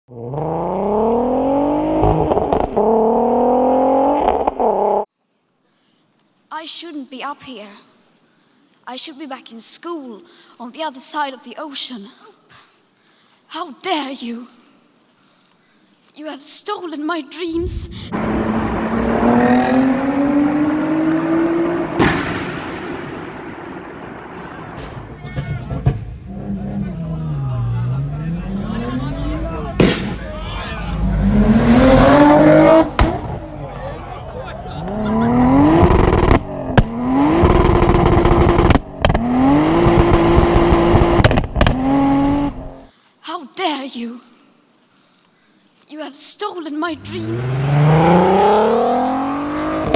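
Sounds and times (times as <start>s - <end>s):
exhaust pops: 17.5s - 27.0s, 28.7s - 33.6s, 39.9s - 41.8s, 46.9s - 49.9s
car engine revving: 17.5s - 42.8s, 46.9s - 49.9s
sharp crack: 17.6s - 26.0s, 29.6s - 33.5s.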